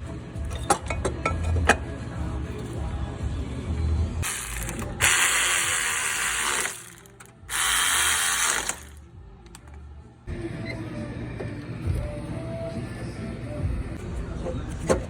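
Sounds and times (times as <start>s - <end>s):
mechanical ratcheting and grinding: 4.2s - 9.0s.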